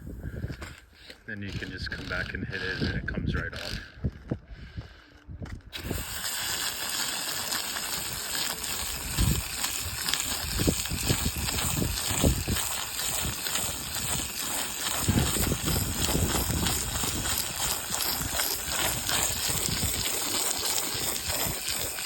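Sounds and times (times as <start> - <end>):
wind on microphone: 0.0 - 0.8, 1.4 - 6.2, 8.9 - 22.0
hose spraying water: 5.7 - 22.0.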